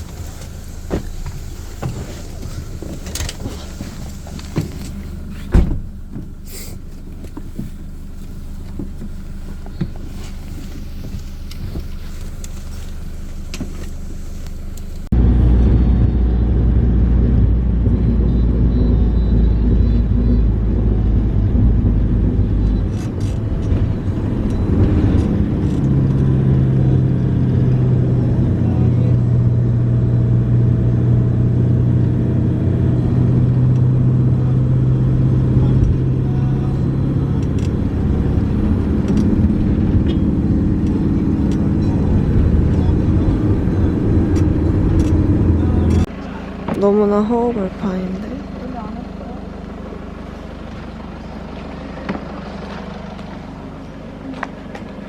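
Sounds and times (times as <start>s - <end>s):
low engine tone: 0.0s - 55.0s
vehicle road and engine rumble: 0.0s - 55.0s.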